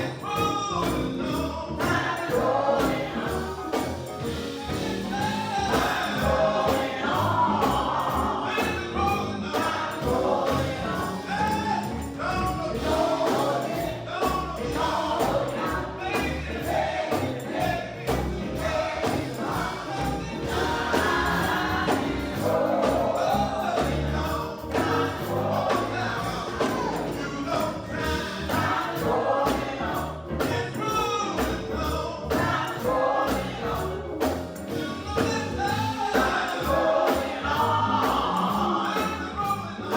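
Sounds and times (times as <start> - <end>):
gospel choir singing: 0.0 - 39.9
instrumental accompaniment: 0.0 - 39.9
lead singer: 0.0 - 39.9
tambourine shaking: 0.0 - 39.9.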